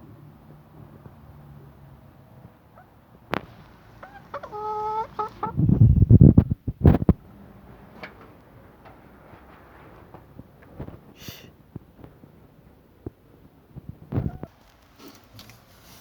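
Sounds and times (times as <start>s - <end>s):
chickens pecking taps: 3.3s - 5.5s
chicken call: 4.0s - 5.5s.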